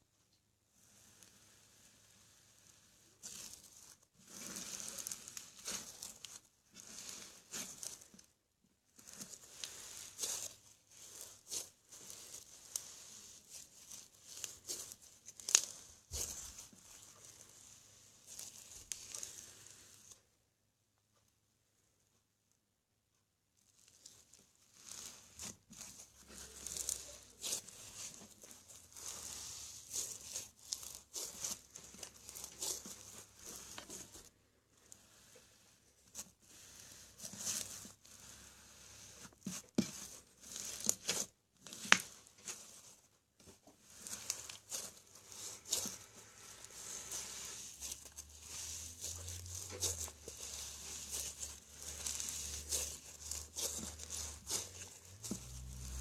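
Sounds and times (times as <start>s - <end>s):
grainy crackling and tearing: 3.2s - 8.3s, 9.0s - 20.2s, 23.7s - 56.0s
slime squished by hand: 43.9s - 56.0s.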